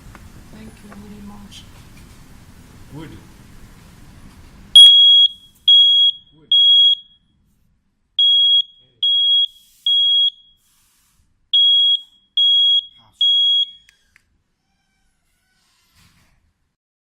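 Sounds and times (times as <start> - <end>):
smoke alarm beeps: 4.8 - 7.4, 8.2 - 10.7, 11.5 - 14.0.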